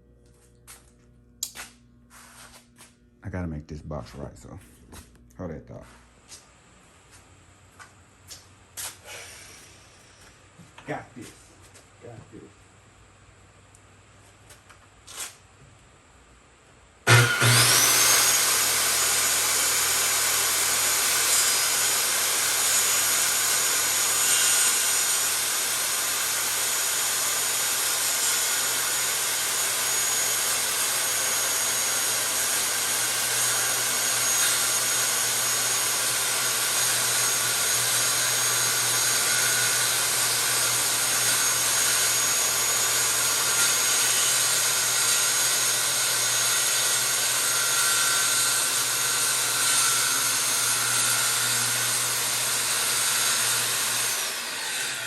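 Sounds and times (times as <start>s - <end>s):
electric power saw cutting wood: 17.0s - 55.0s.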